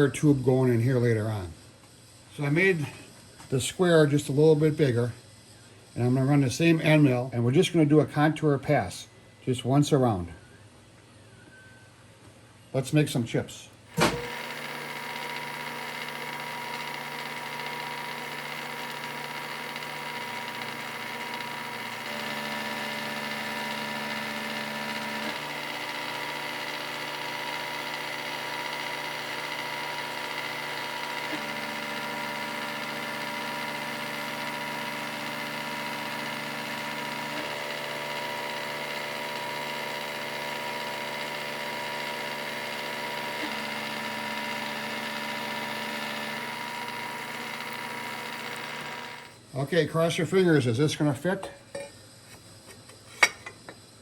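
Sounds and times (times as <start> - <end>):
cnc milling machine whine: 14.0 - 49.4.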